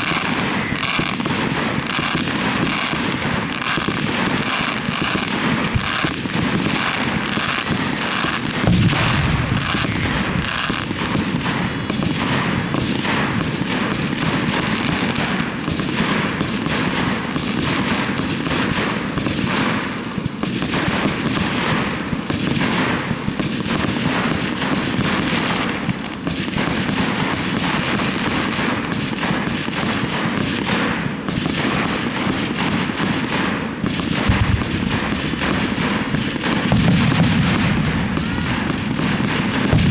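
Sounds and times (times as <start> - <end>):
heavy firework boom: 0.0 - 29.4, 33.9 - 39.9
fireworks bangs and crackling: 0.0 - 39.9.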